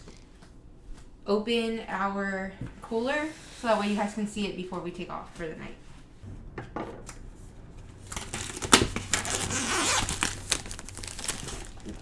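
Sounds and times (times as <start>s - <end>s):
packaging snapping: 8.1s - 12.0s
packaging tearing and crinkling: 8.1s - 12.0s.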